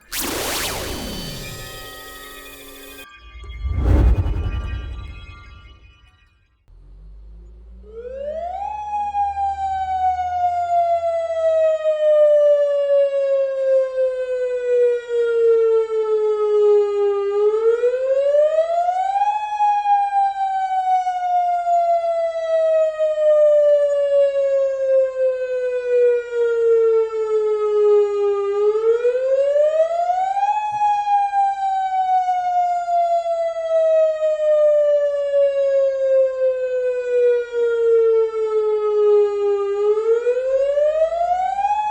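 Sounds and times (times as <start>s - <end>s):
warning siren wailing: 0.0s - 6.1s, 36.8s - 41.9s.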